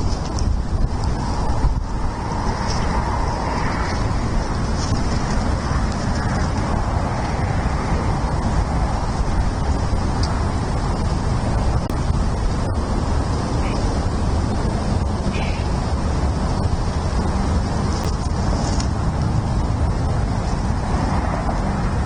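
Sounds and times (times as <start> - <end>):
distant road traffic: 0.0 - 22.0
wind: 0.0 - 22.0.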